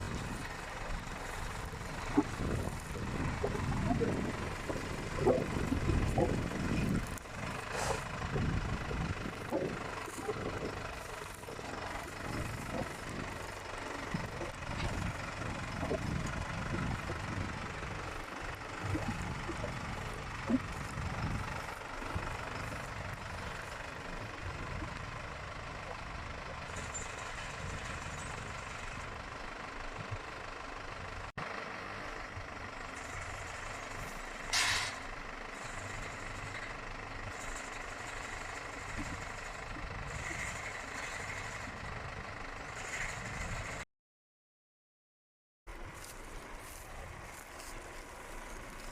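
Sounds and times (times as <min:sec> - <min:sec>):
engine running: 0:00.0 - 0:43.8, 0:45.7 - 0:48.9.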